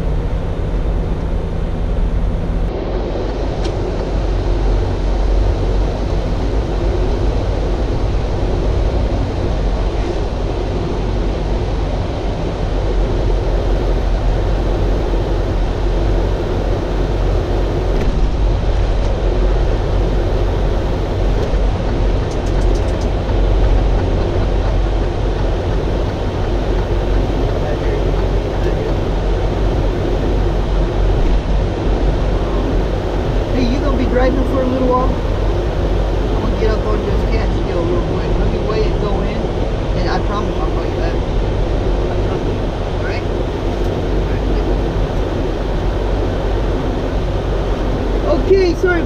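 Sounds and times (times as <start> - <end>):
diesel engine humming: 0.0 - 49.0
road and cab noise: 0.0 - 49.0.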